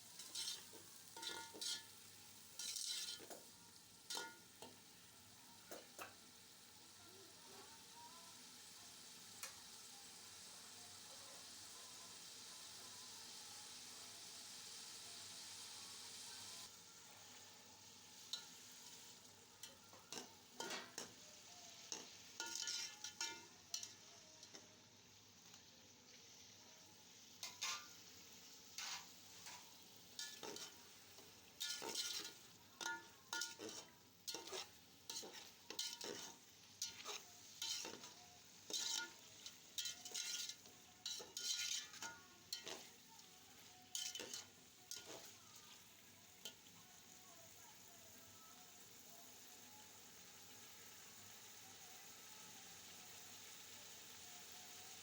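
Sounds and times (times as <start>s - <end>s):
food sizzling in oil: 0.0s - 55.0s
spoon scraping pot: 0.2s - 1.9s, 2.6s - 3.4s, 21.9s - 24.7s, 27.4s - 27.9s, 28.8s - 42.9s, 43.9s - 45.4s.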